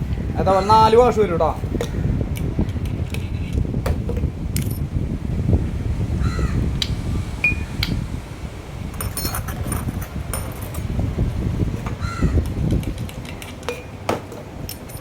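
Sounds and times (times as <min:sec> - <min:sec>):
low background rumble: 0:00.0 - 0:15.0
metal gears clinking: 0:09.0 - 0:10.9, 0:14.7 - 0:15.0.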